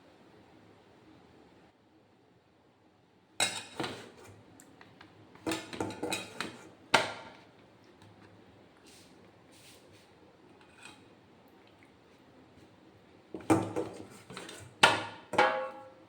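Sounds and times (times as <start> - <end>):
dishes and box clattering: 15.3 - 15.9.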